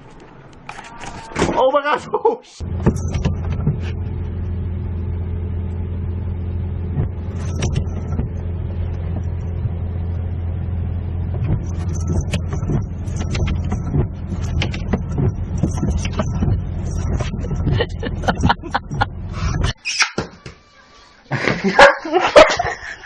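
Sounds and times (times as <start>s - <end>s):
steady low drone: 2.6s - 19.8s.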